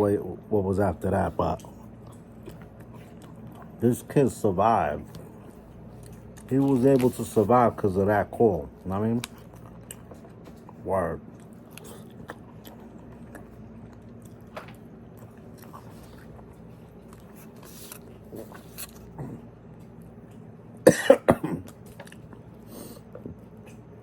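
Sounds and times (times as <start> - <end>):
soft chewing: 0.3 - 20.8, 21.6 - 24.0
man coughing hard: 20.8 - 21.7.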